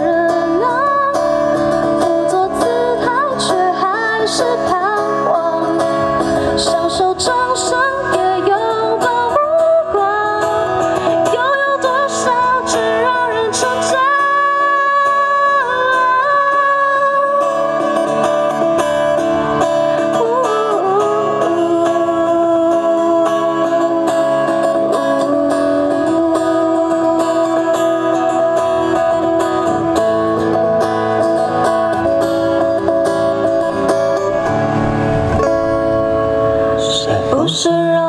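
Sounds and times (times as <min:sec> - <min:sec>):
guitars: 0:00.0 - 0:38.0
live band playing: 0:29.8 - 0:37.6.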